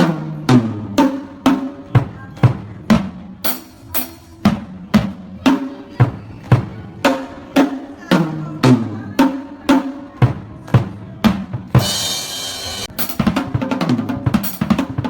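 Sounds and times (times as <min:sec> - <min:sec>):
drum kit playing: 0:00.0 - 0:15.0.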